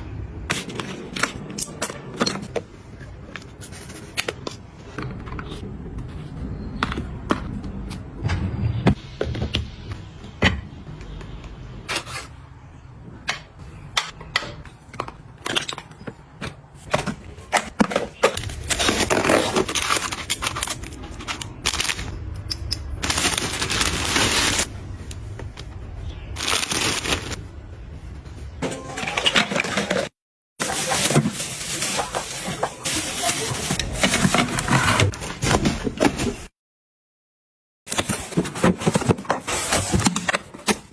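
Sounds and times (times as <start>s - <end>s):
packaging rustling: 16.7s - 25.2s, 26.4s - 27.4s, 29.4s - 36.4s.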